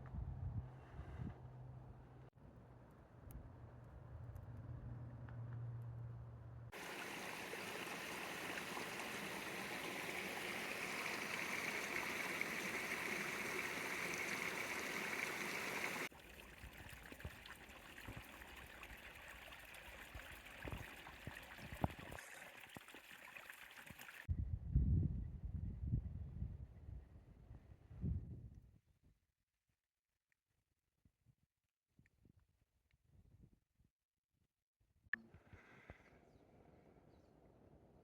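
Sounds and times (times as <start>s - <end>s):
stream water rushing: 6.8s - 20.0s.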